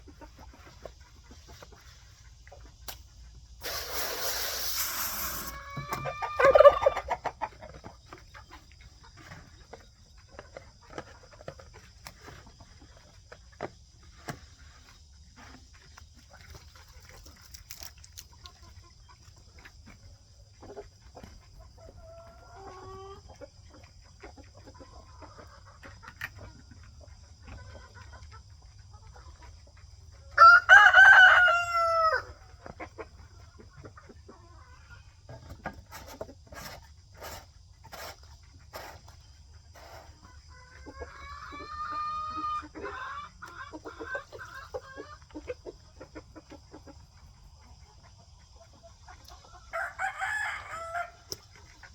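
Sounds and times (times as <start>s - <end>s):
hens clucking: 0.0s - 51.9s
rooster crowing: 30.4s - 32.4s, 49.7s - 51.3s.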